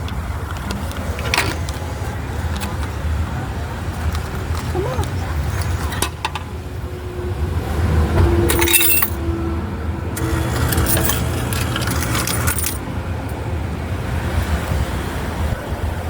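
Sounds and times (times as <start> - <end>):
coins jingling in a hand: 8.5 - 9.2, 10.2 - 12.8.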